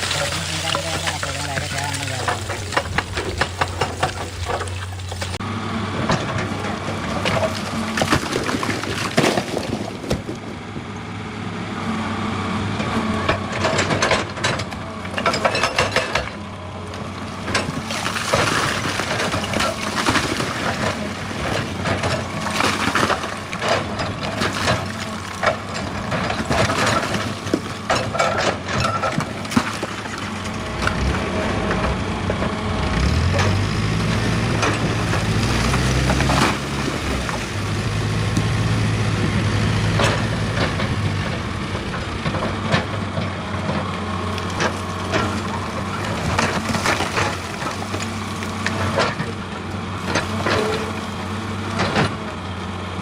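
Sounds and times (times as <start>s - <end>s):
diesel engine low note: 0.0s - 8.6s, 9.9s - 53.0s.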